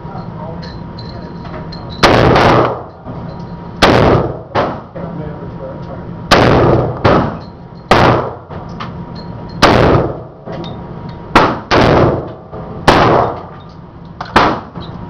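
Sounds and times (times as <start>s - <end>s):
rifle shots with echo: 2.0s - 2.9s, 3.8s - 4.9s, 6.3s - 8.5s, 9.6s - 10.3s, 11.3s - 13.5s, 14.3s - 14.8s.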